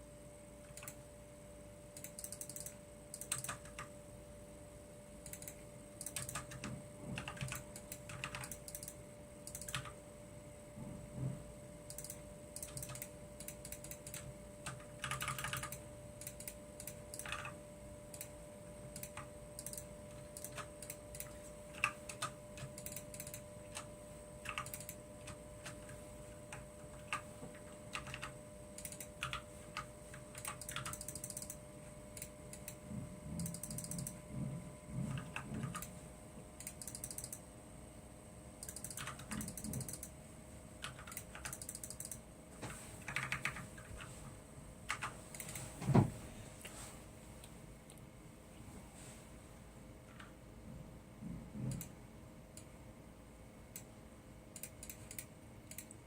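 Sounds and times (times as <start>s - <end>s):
faint electronic whine: 0.0s - 56.0s
keyboard keystrokes: 2.0s - 3.9s, 5.3s - 10.0s, 11.9s - 18.3s, 19.0s - 31.6s, 32.2s - 34.2s, 35.1s - 35.9s, 38.6s - 40.1s, 40.8s - 42.2s, 43.0s - 43.9s.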